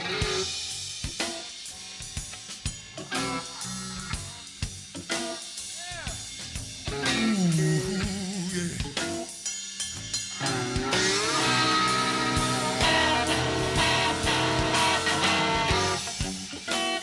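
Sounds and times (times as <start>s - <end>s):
rock band playing: 0.0s - 17.0s
bending lead guitar line: 6.9s - 9.2s, 10.4s - 16.4s.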